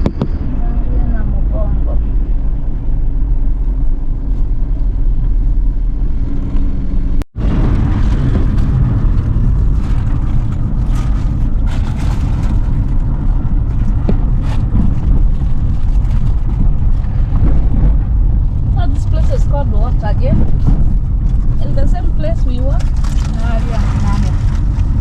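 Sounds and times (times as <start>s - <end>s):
car engine and tyre rumble: 0.0s - 25.0s
knocks and rattles: 7.4s - 25.0s.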